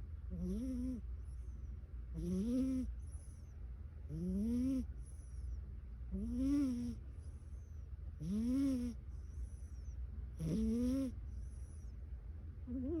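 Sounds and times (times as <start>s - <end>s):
cat snoring: 0.3s - 1.0s, 2.2s - 3.4s, 4.1s - 5.5s, 6.1s - 7.0s, 8.2s - 9.8s, 10.4s - 11.8s.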